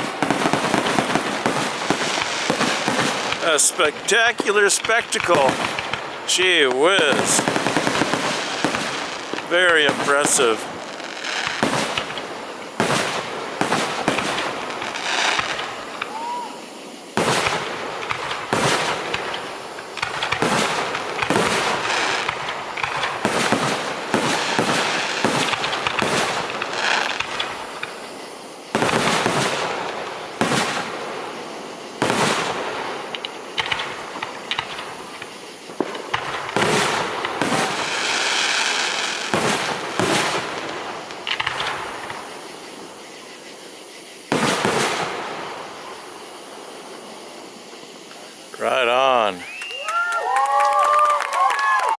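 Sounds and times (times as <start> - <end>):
firework shell bursts: 0.0 - 16.6
firework crackle: 0.0 - 52.0.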